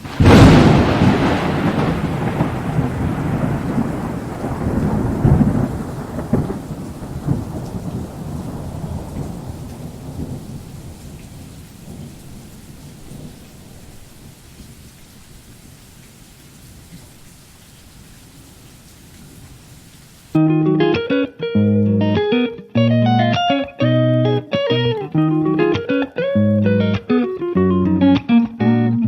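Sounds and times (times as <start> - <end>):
thunder rumbling: 0.0 - 15.8.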